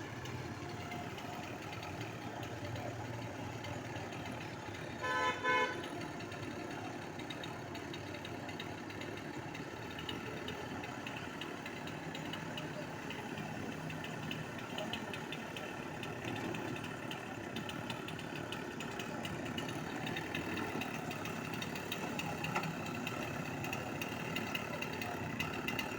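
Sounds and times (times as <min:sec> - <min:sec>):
vehicle horn beeps: 0:05.0 - 0:06.0.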